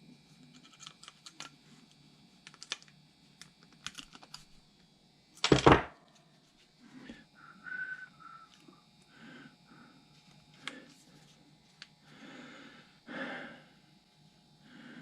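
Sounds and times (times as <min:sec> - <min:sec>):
small parts clicking and tapping: 0:00.5 - 0:01.6, 0:02.4 - 0:04.5.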